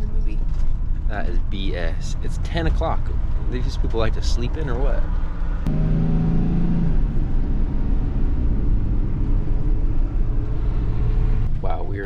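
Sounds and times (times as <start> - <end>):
low hum: 0.0 - 12.0
van road and engine rumble: 0.0 - 12.0.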